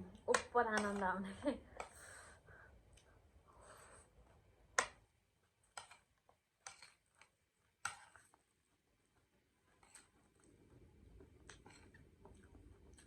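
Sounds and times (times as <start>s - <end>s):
faint chewing: 0.4s - 13.0s.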